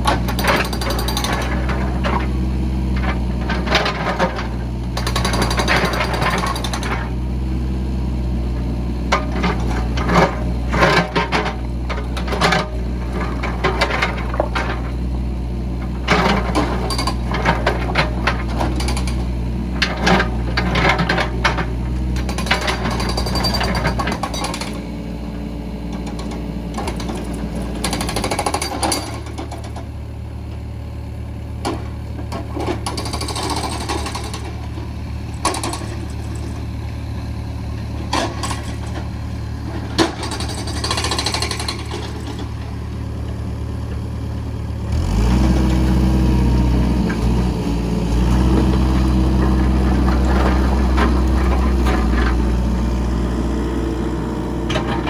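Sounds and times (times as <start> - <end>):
diesel engine running: 0.0 - 55.0
metal clanks and rattles: 15.8 - 24.8, 38.0 - 42.8.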